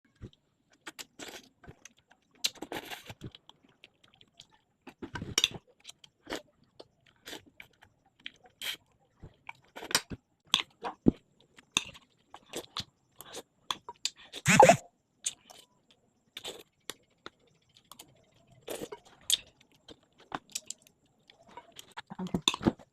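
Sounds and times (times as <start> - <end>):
person chewing food: 0.2 - 15.6, 16.2 - 22.8.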